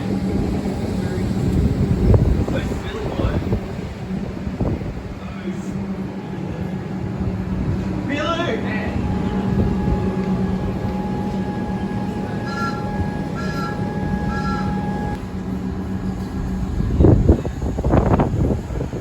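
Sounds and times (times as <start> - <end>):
train rumbling past: 0.0 - 19.0
wind gusts buffeting microphone: 0.0 - 19.0
short high calls: 9.3 - 15.2.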